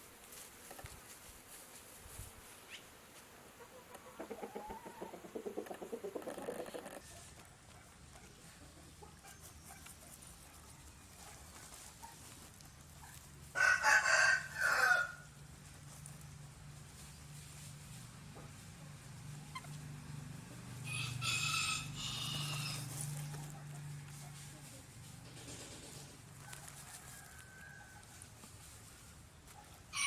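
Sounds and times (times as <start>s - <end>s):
rooster crowing: 13.5s - 15.3s, 20.8s - 22.9s, 26.4s - 28.2s.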